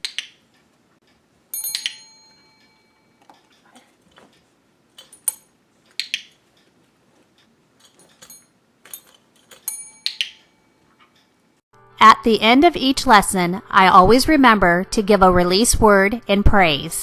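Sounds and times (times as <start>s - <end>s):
training clicker clicks: 0.0s - 11.3s
desk call bell ringing: 1.5s - 11.5s.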